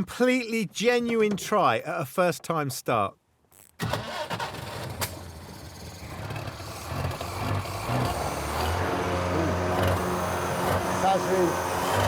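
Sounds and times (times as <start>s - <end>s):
car engine running: 5.2s - 12.0s.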